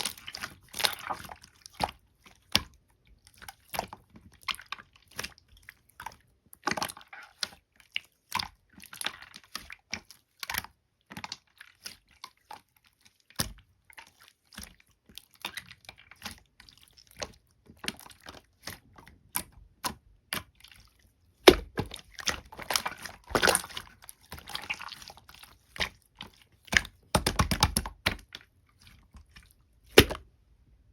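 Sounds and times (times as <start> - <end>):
slime squishing with wet pops: 0.0 - 30.4.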